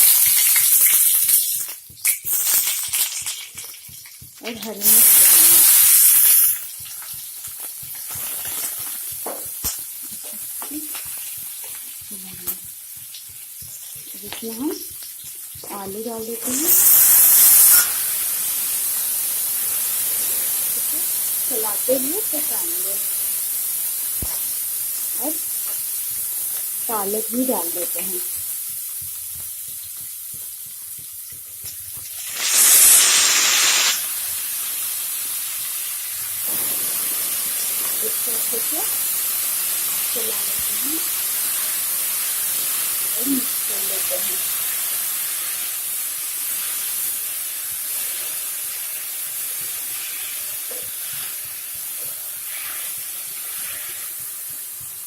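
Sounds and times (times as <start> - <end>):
spatula stirring and clicking on pan: 0.0 - 5.1, 5.7 - 16.7, 24.1 - 32.3, 47.6 - 55.0
spices sizzling in hot oil: 0.0 - 55.0.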